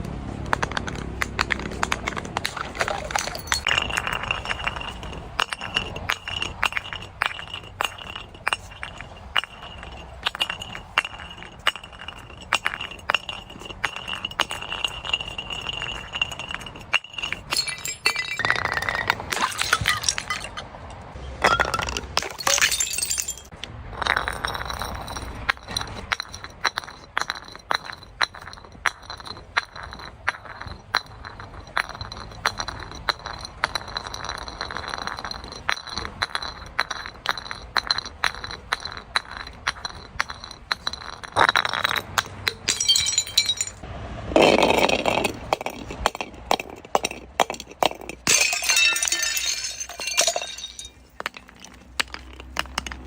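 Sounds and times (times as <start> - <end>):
broken glass crunching: 48.3 - 51.4.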